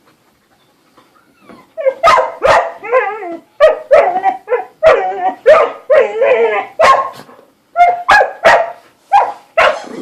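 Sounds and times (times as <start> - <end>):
dog barking: 1.9 - 2.9, 3.6 - 9.9.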